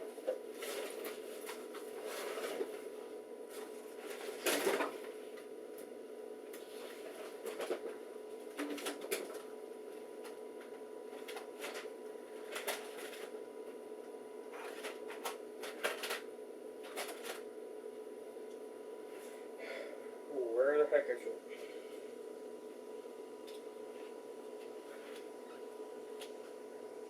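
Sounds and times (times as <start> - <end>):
steady electrical hum: 0.0 - 27.0.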